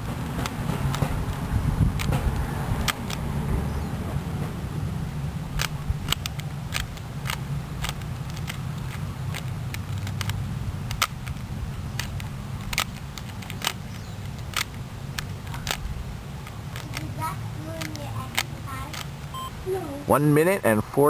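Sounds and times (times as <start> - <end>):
low background hum: 0.0 - 21.0
puzzle cube layers clicking: 5.5 - 19.4.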